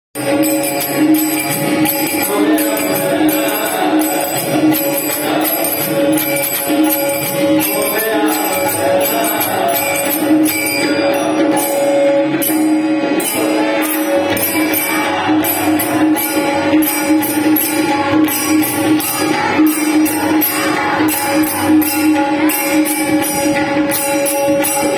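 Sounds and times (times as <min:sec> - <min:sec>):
jingling percussion: 0:00.2 - 0:24.9.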